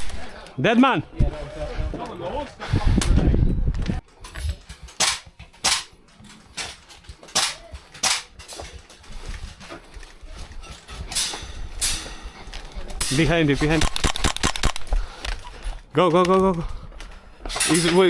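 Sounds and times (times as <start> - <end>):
airsoft gun shots: 7.4 - 8.4, 13.7 - 14.9.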